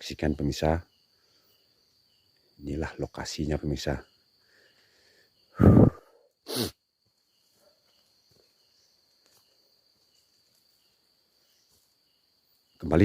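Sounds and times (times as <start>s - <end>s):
person sneezing: 5.6s - 6.8s.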